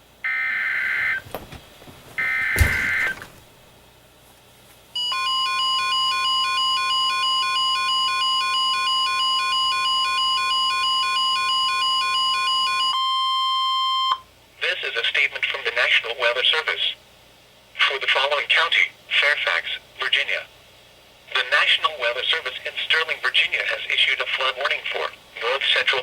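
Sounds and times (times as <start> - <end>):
steady warning alarm tone: 0.2 - 1.2, 2.2 - 3.2, 5.0 - 14.3.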